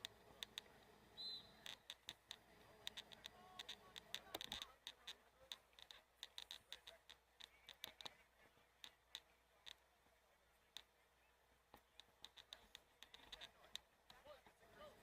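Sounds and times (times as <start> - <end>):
faint sharp clicks: 0.0 - 0.9, 1.6 - 8.2, 11.7 - 14.3.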